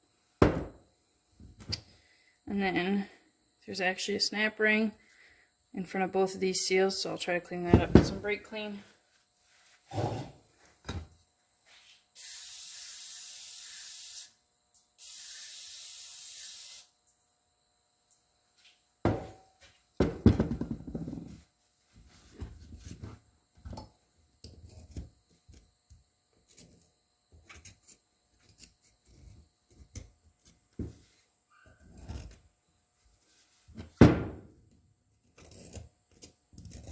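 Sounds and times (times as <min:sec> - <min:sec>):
aerosol can spraying: 0:12.2 - 0:14.3, 0:15.0 - 0:16.9.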